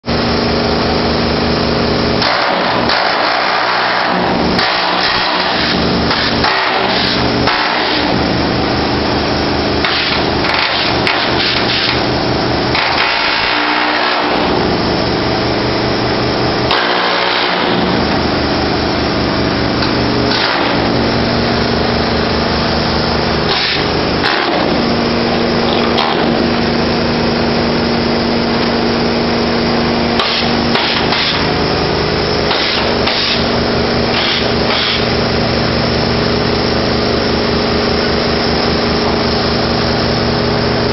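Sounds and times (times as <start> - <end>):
power tool hammering rapidly: 2.2 - 8.4, 9.8 - 14.6, 16.6 - 18.2, 19.8 - 21.4, 22.7 - 27.1, 30.1 - 31.7, 32.4 - 35.2.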